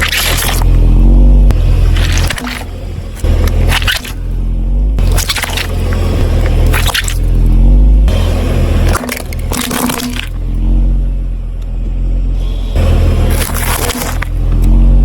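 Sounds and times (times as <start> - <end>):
objects crunching under tyres: 0.0 - 8.1, 8.7 - 11.0, 12.8 - 15.0
car engine running low: 0.0 - 15.0.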